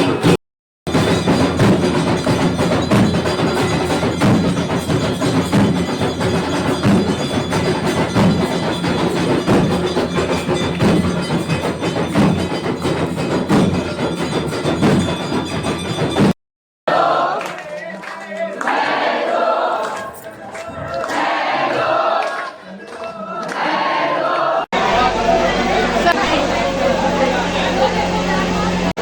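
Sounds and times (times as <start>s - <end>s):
devotional music with percussion: 0.9s - 16.3s
ringing bells: 0.9s - 16.4s
group of voices singing: 16.9s - 28.9s.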